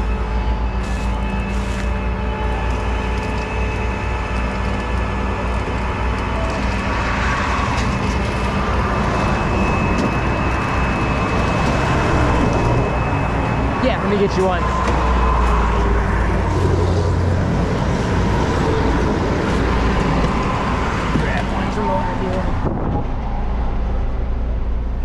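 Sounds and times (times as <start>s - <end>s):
road traffic: 0.0s - 25.0s
truck engine running: 0.0s - 25.0s
vehicle passing: 6.8s - 23.1s.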